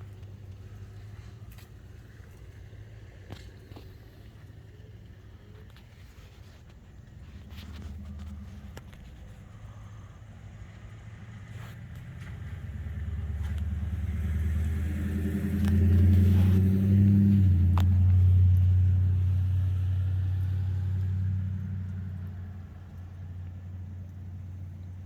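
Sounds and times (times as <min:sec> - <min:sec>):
passing vehicle engine rumble: 0:00.0 - 0:25.0.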